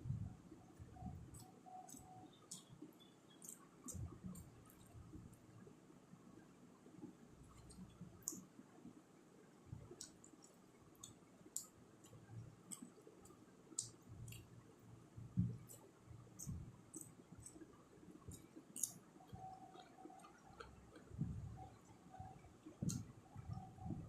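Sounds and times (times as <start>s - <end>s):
person chewing with lip smacks: 18.3s - 21.1s.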